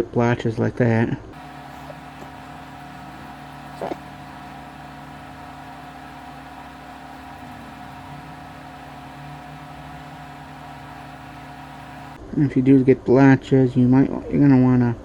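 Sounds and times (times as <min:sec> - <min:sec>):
mechanical hum: 0:01.4 - 0:12.2
mid-pitched whine: 0:01.4 - 0:12.2.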